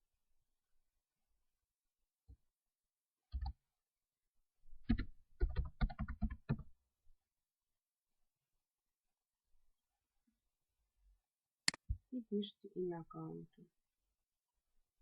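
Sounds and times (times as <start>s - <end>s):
computer keyboard keystrokes: 4.9s - 6.6s.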